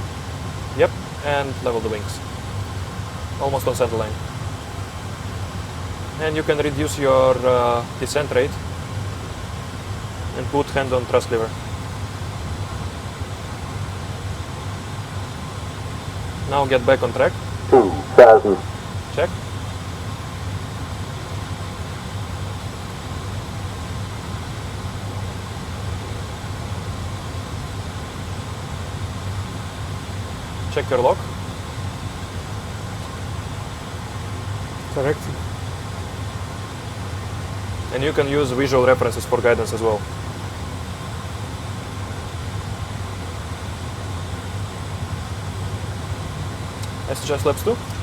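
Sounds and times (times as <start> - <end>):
cockpit low hum: 5.7 - 19.4
low cockpit hum: 15.8 - 19.3.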